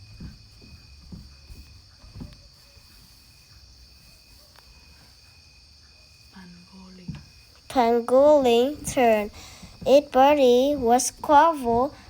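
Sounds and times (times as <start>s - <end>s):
soft low thumps: 0.0s - 2.6s, 7.0s - 12.0s.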